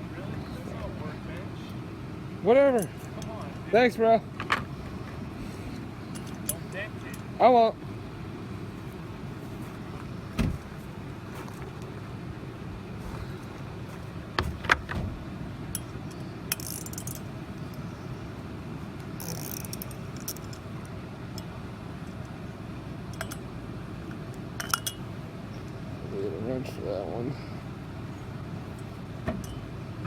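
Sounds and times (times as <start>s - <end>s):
steady low hum: 0.0s - 30.0s
metal tools clinking: 15.8s - 17.3s, 24.6s - 25.1s.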